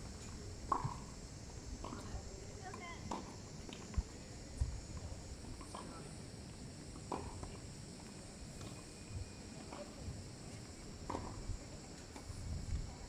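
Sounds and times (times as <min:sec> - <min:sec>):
wind buffeting microphone: 0:12.3 - 0:13.0.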